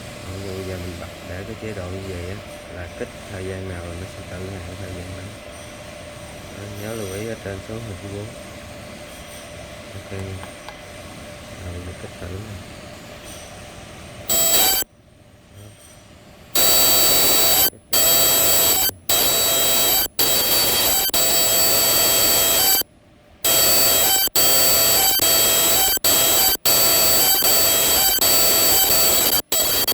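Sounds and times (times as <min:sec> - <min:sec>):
welding machine high screech: 0:14.3 - 0:14.8, 0:16.6 - 0:22.8, 0:23.5 - 0:29.9.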